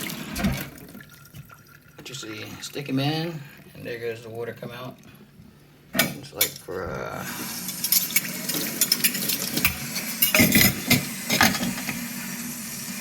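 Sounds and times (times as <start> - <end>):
cutlery clattering in plastic drainer: 7.7 - 12.0.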